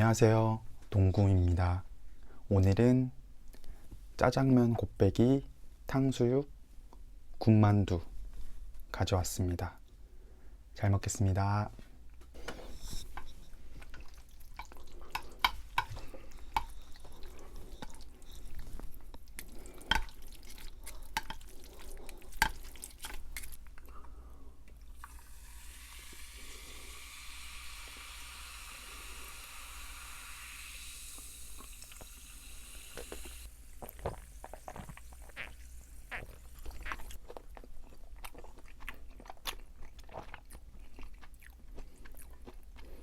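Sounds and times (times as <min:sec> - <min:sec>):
wet sticky stirring of noodles: 0:12.4 - 0:23.9
steady hiss: 0:25.0 - 0:36.9.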